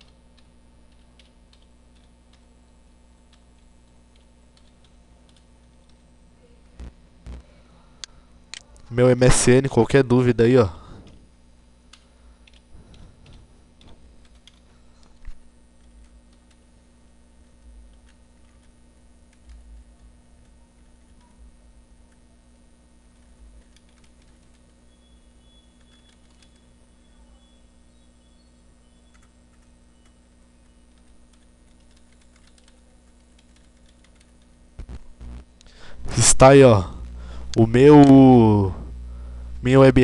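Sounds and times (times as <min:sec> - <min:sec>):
computer keyboard keystrokes: 0:00.0 - 0:02.5, 0:03.3 - 0:06.0, 0:11.9 - 0:14.7, 0:15.8 - 0:16.7, 0:17.4 - 0:21.4, 0:23.1 - 0:24.8, 0:25.5 - 0:26.7, 0:29.1 - 0:34.6
steady low hum: 0:00.0 - 0:40.0.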